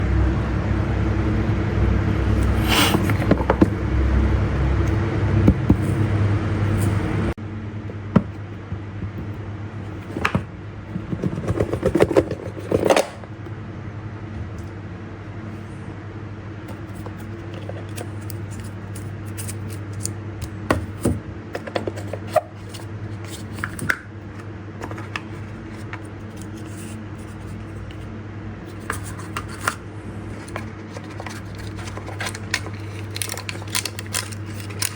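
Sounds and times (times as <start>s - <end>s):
steady low hum: 0.0s - 34.9s
packaging clicks and rustles: 24.8s - 28.0s, 28.7s - 34.9s.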